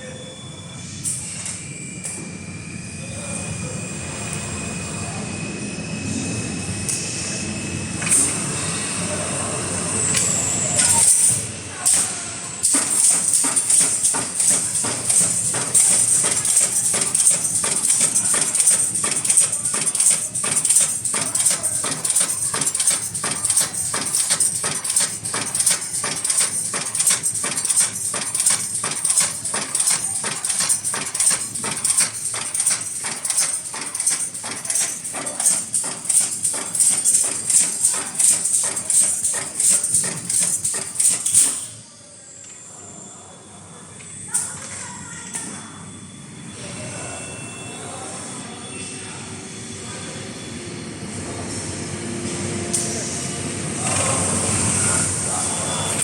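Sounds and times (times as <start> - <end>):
sharp machine clacks: 10.1 - 41.8
welding machine humming: 10.2 - 41.7.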